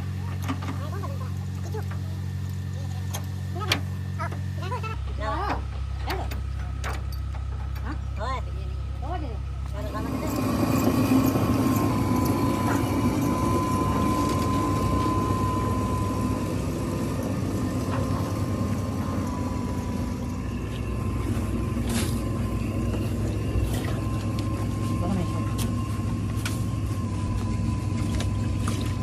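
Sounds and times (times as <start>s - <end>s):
heavy machinery engine drone: 0.0s - 29.0s
high whine: 9.7s - 29.0s.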